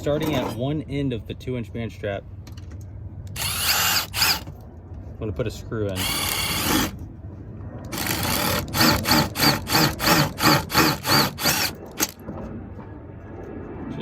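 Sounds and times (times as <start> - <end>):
impact driver whining: 3.4 - 4.5, 6.0 - 7.0, 7.9 - 12.2.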